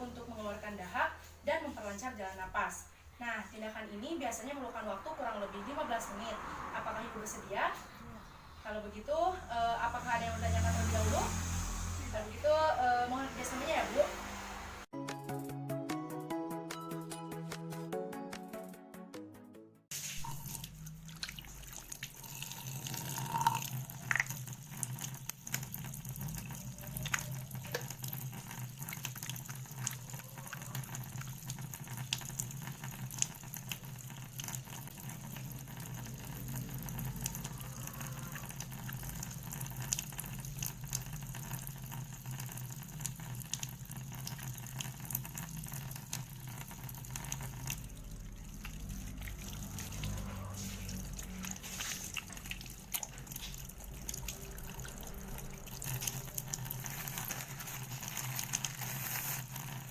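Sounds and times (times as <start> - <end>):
water running from a tap: 19.9 - 59.9
small splashes and clicks: 20.2 - 22.3, 23.7 - 59.9.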